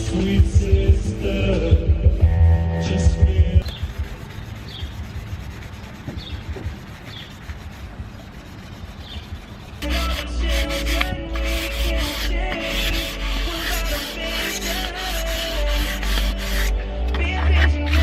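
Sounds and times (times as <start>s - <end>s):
music with heavy bass: 0.0s - 3.6s
sandpaper scraping plastic: 3.6s - 18.0s.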